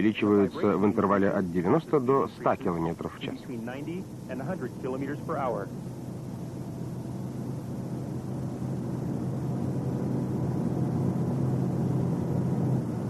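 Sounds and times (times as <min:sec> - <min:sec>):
car interior engine drone: 0:00.0 - 0:13.0.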